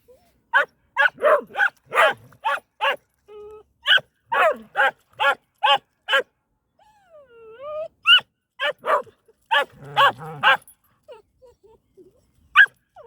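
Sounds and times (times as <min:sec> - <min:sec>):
dog barking: 0:00.5 - 0:03.0, 0:03.9 - 0:06.3, 0:08.6 - 0:10.6.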